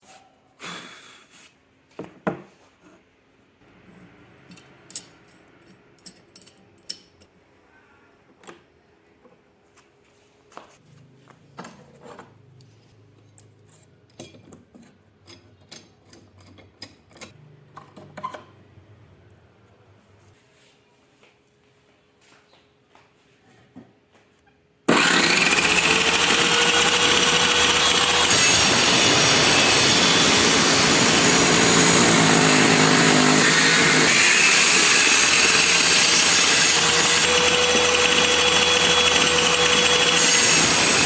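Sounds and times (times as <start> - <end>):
small tools clicking and clinking: 4.5 - 7.3.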